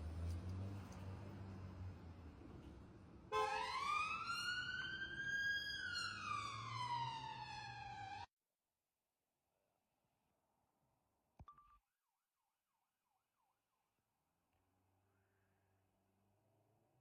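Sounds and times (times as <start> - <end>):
emergency vehicle siren wailing: 3.3 - 8.3.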